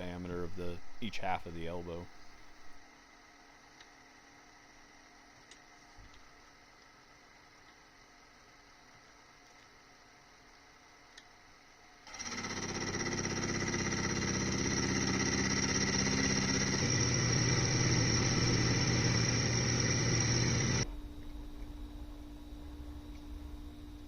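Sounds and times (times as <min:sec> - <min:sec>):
machine tool motor whining: 0:12.1 - 0:20.9.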